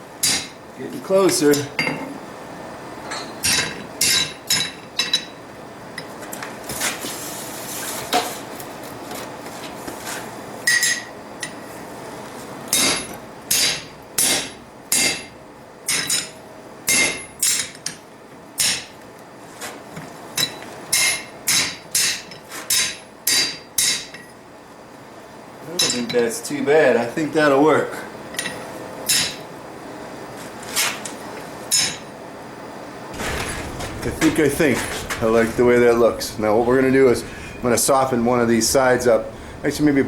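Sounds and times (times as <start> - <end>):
hammer striking hot steel on anvil: 0.2 - 0.6, 3.1 - 5.4, 12.7 - 17.9, 18.6 - 19.0, 20.4 - 24.2, 28.4 - 29.4, 31.7 - 32.1.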